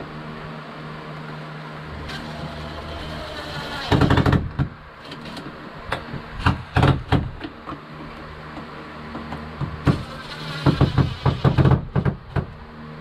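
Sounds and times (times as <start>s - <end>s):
screws and fixture knocking: 9.2s - 12.5s.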